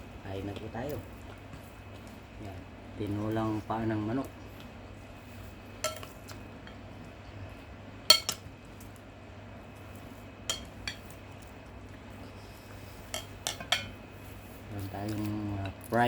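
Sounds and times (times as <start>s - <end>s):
cutlery clinking against dishes: 5.8s - 6.2s, 8.1s - 8.4s, 13.1s - 14.0s.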